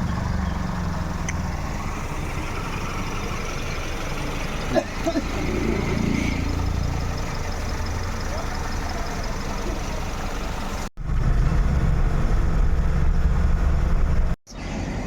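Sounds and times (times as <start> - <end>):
vehicle engine and road noise: 0.0 - 15.0.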